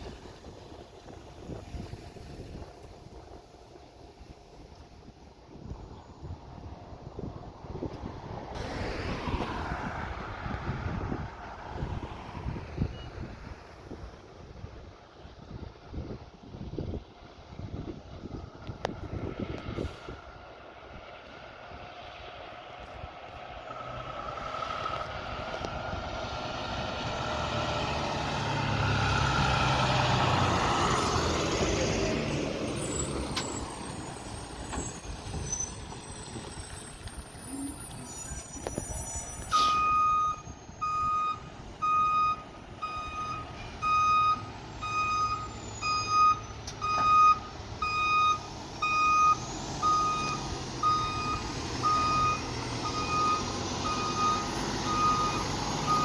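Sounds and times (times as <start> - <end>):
heavy vehicle engine: 0.0 - 56.0
reversing alarm beeping: 36.4 - 56.0.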